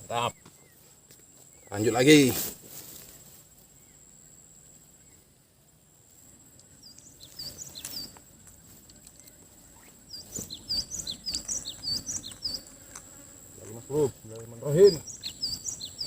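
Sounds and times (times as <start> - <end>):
small bird chirping: 6.5 - 16.0.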